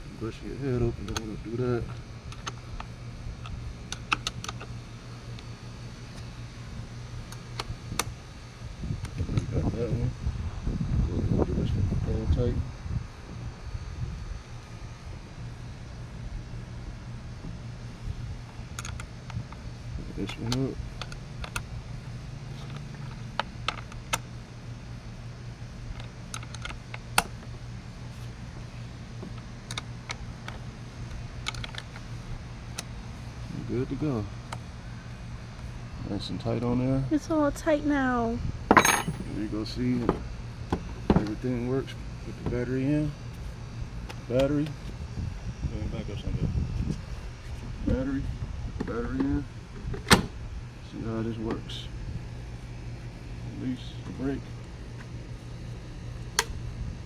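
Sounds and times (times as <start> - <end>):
low hum: 25.7 - 57.0.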